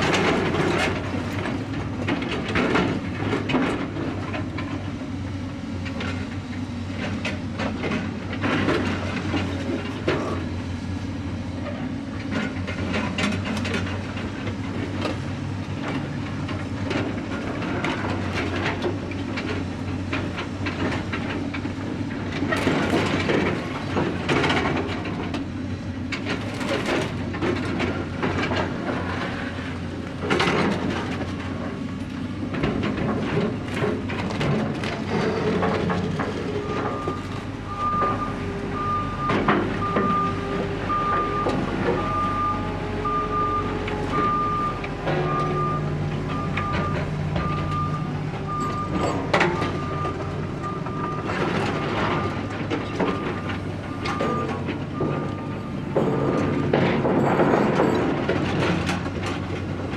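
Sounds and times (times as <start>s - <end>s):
knocks and clatter: 15.8s - 38.6s, 44.8s - 59.9s.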